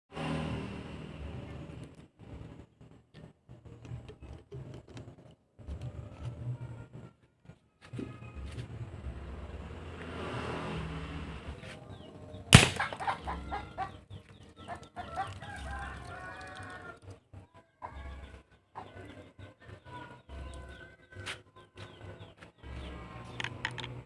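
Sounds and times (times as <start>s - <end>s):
gun bang: 12.5s - 13.2s
chickens clucking and squawking: 12.8s - 22.4s.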